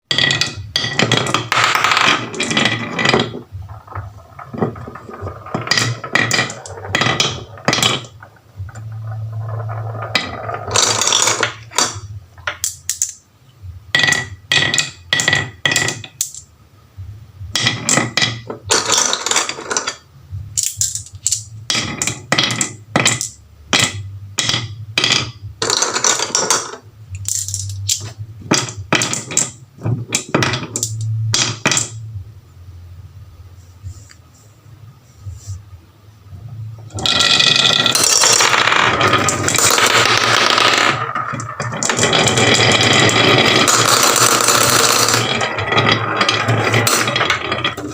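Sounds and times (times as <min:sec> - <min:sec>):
marbles clattering on wooden track: 0:00.1 - 0:13.2, 0:13.9 - 0:16.5, 0:17.5 - 0:20.0, 0:20.6 - 0:32.0, 0:36.9 - 0:47.9
low rolling rumble: 0:02.2 - 0:12.5.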